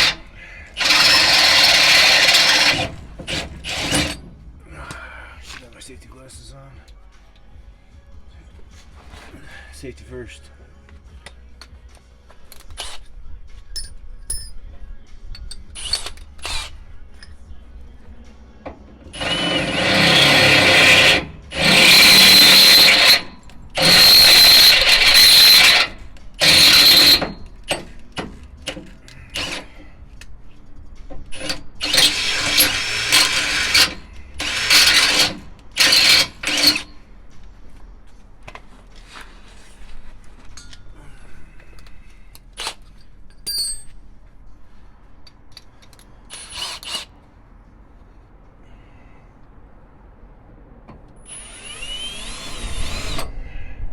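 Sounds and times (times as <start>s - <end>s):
electric drill boring into metal: 0.0s - 4.2s, 15.8s - 16.7s, 19.1s - 27.9s, 28.7s - 29.8s, 31.3s - 37.0s, 46.3s - 47.1s, 51.2s - 53.3s.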